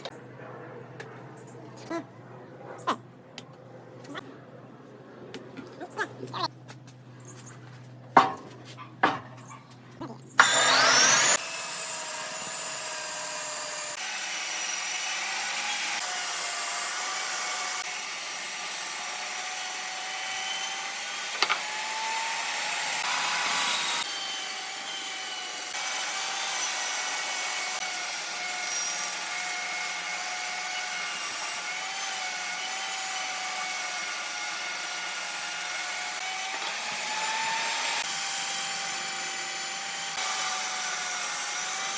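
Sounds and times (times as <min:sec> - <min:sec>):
power tool whining: 0:10.4 - 0:41.9.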